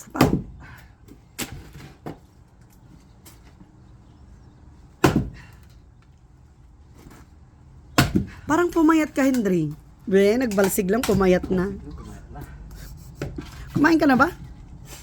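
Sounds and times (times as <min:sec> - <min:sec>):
axe chopping a log: 0:00.1 - 0:00.6, 0:05.0 - 0:05.5, 0:08.0 - 0:08.4.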